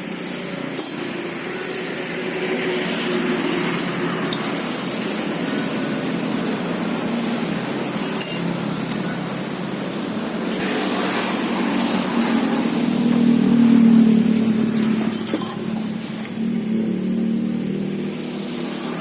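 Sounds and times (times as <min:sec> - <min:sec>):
sharp metallic clink: 0:00.8 - 0:01.3, 0:08.2 - 0:08.6, 0:15.1 - 0:15.8
car engine running: 0:01.3 - 0:19.0.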